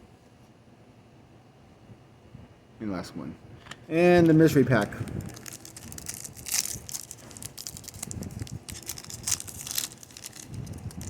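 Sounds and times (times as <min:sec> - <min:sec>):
wrapper crinkling and tearing: 0:04.2 - 0:11.0.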